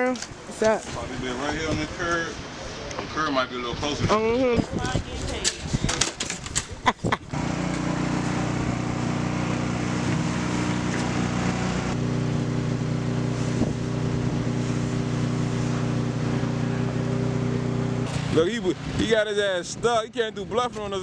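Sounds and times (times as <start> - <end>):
car engine running: 7.3 - 20.8.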